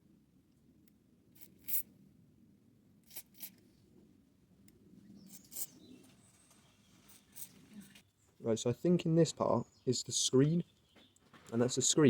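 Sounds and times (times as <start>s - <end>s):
hand tools scratching: 5.3s - 5.8s.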